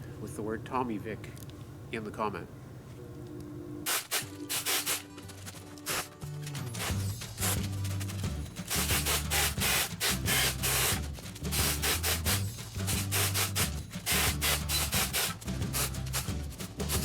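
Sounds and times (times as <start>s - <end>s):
background music with bass and beat: 6.2s - 17.0s.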